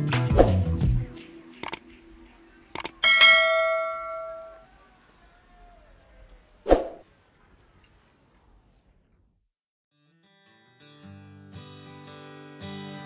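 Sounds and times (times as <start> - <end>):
short metallic clink: 3.0 - 4.6
struck metal ringing: 3.0 - 4.6.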